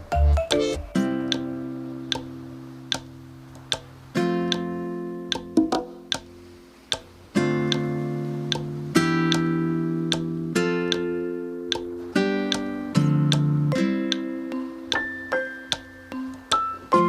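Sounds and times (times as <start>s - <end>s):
plucked guitar notes: 0.0s - 3.2s, 4.2s - 6.4s, 7.3s - 17.0s
strummed acoustic guitar chords: 7.3s - 14.9s.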